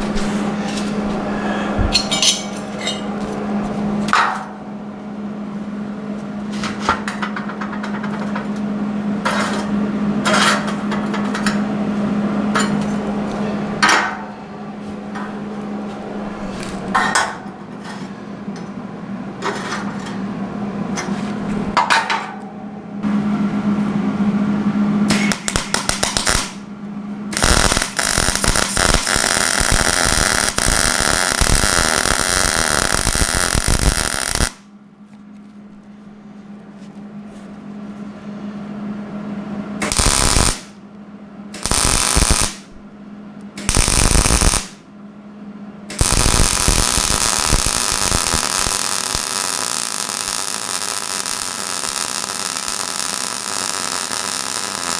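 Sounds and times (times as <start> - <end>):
steady hum: 0.0 - 54.9
welder crackling: 25.1 - 26.6, 27.4 - 34.6, 39.8 - 40.7, 41.6 - 42.8, 43.6 - 44.8, 45.9 - 54.9.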